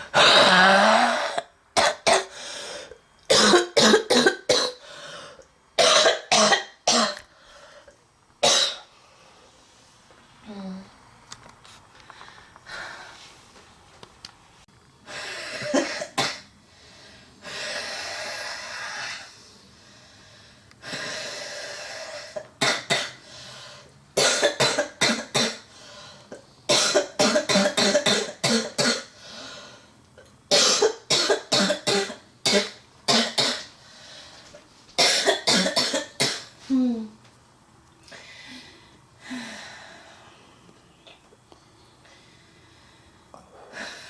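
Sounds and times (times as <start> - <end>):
girl coughing: 3.3 - 4.8, 5.8 - 7.2, 8.4 - 8.9, 15.6 - 16.4, 24.2 - 25.7, 26.7 - 29.1, 30.5 - 33.7, 35.0 - 37.1.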